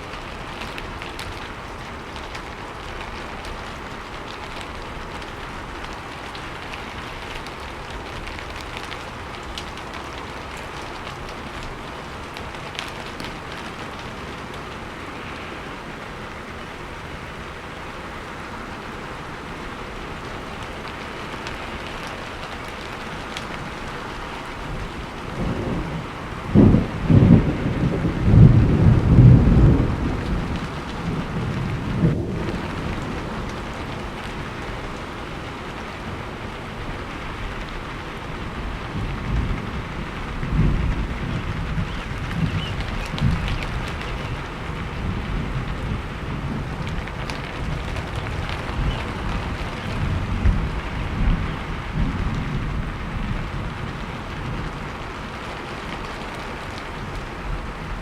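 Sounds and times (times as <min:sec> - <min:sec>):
steady rain falling: 0:00.0 - 0:58.0
low rumble of thunder: 0:19.8 - 0:58.0.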